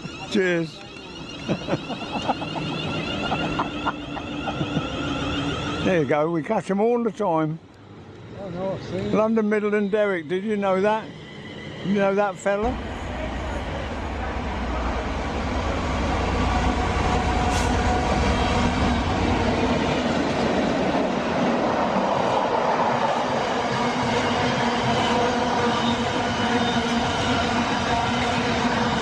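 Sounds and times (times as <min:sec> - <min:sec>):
train wheels rumbling on rails: 0:00.0 - 0:06.2, 0:10.7 - 0:29.0
steady tones: 0:00.0 - 0:22.6.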